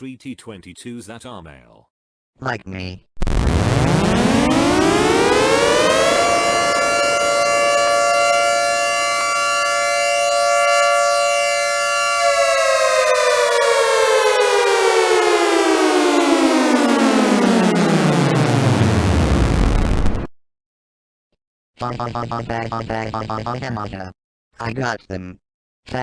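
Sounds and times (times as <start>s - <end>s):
mechanical warning siren: 3.2s - 20.3s.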